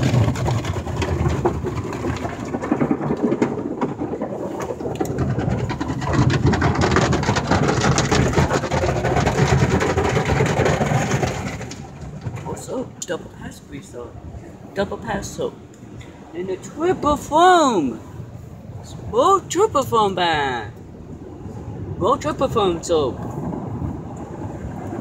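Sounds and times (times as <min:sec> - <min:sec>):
car wash equipment rumble and hiss: 0:12.4 - 0:25.0.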